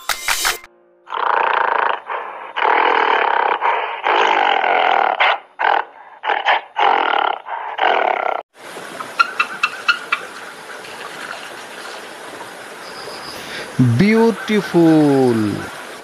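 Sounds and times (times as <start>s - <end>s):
large animal roaring: 1.1s - 8.4s.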